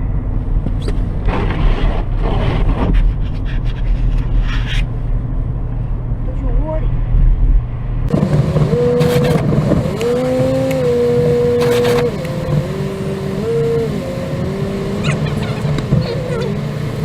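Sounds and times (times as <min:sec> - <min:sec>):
car engine: 0:00.0 - 0:17.0
road rumble: 0:00.0 - 0:17.0.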